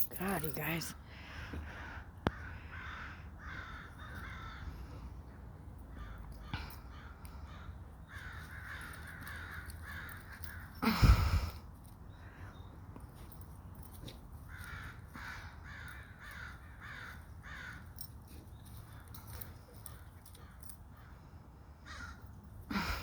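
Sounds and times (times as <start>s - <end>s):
crows cawing: 1.2s - 5.1s, 5.9s - 10.8s, 14.4s - 18.2s, 18.8s - 23.0s.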